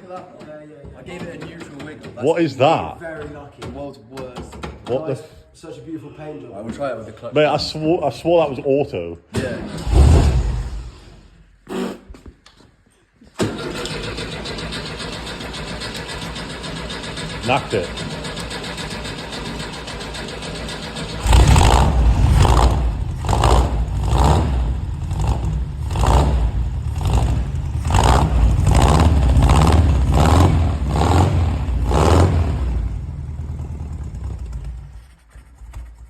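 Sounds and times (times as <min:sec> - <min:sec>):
engine running and revving: 0:14.8 - 0:34.9.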